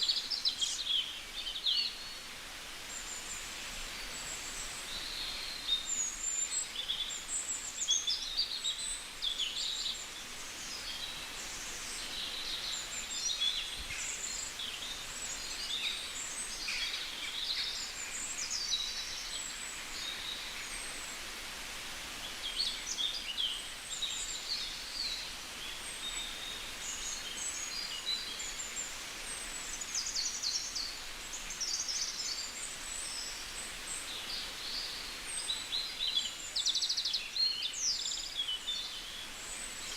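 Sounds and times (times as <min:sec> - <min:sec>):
outdoor hiss: 0:00.0 - 0:39.9
songbirds chirping: 0:00.0 - 0:39.9.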